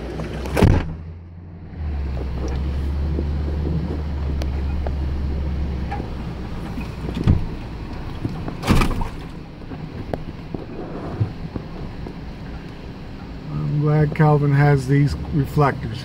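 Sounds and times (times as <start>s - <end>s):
water rushing and splashing: 0.0s - 1.0s, 1.8s - 9.6s
truck engine drone under load: 0.0s - 16.0s.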